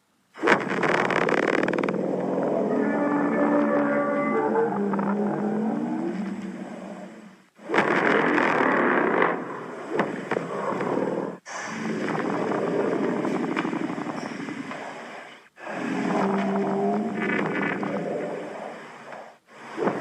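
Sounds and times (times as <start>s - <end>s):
harsh rasping sounds: 0.4s - 20.0s
monster roar: 1.6s - 7.2s, 15.6s - 18.4s.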